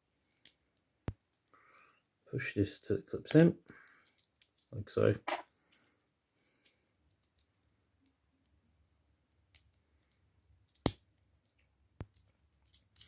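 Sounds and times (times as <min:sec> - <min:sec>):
plastic toy parts clicking: 0:03.3 - 0:04.7, 0:09.5 - 0:13.0.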